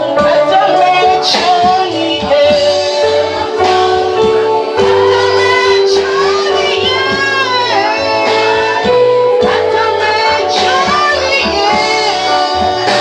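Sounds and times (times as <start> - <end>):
band playing worship music: 0.0 - 13.0
person singing: 0.0 - 13.0.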